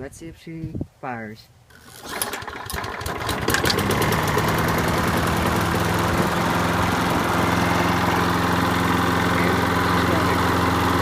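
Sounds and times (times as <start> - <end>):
lawnmower engine starting and running: 1.7 - 11.0.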